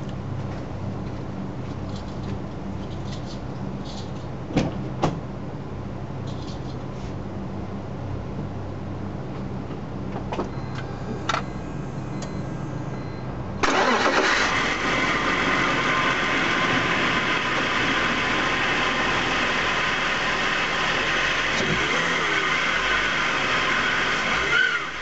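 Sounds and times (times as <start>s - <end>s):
car engine starting and idling: 10.1s - 25.0s
clicks: 10.4s - 12.4s.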